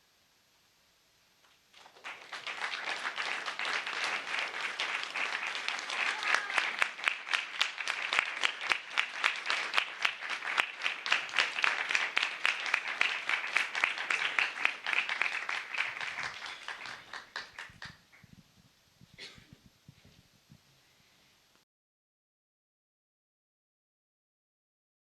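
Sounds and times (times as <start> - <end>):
audience applauding: 1.7 - 18.0.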